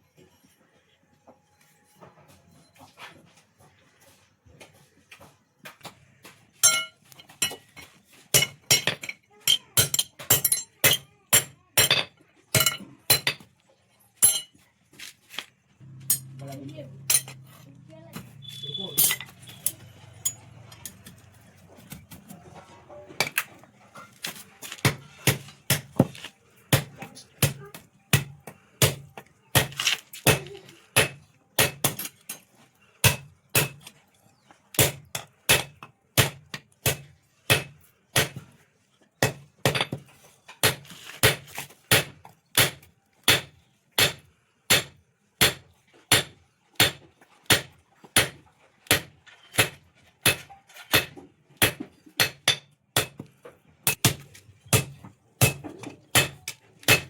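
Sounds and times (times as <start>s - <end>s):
hammer striking steel on anvil: 6.6s - 7.6s, 8.3s - 13.5s, 14.2s - 14.6s, 15.8s - 17.6s, 18.4s - 21.2s, 33.0s - 33.9s, 40.6s - 53.2s, 53.9s - 57.0s.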